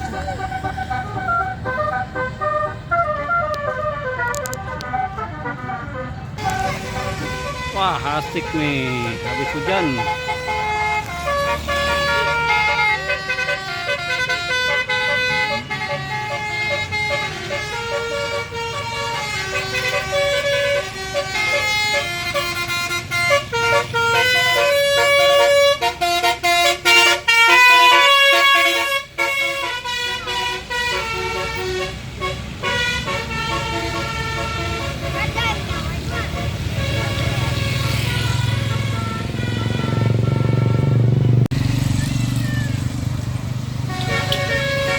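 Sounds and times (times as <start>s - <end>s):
multi-note musical bus horn: 0.0s - 41.5s, 43.8s - 44.9s
bus rumble: 0.0s - 44.9s.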